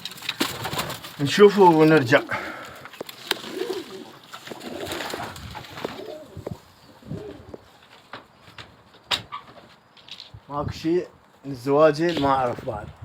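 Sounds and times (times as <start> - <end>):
pigeons cooing: 0.3 - 7.8.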